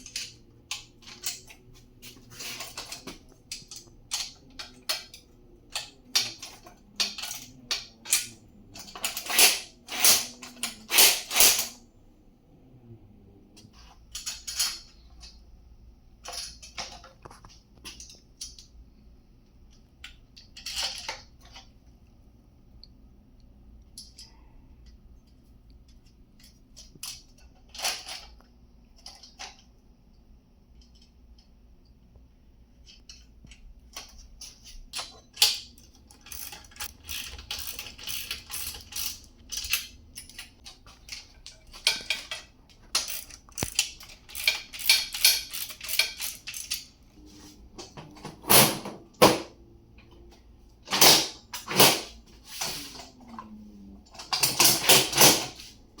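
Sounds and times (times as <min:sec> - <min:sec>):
metal tools clinking and rattling: 0:00.0 - 0:11.8, 0:14.0 - 0:15.4, 0:16.2 - 0:18.7, 0:32.9 - 0:46.9, 0:54.1 - 0:55.7.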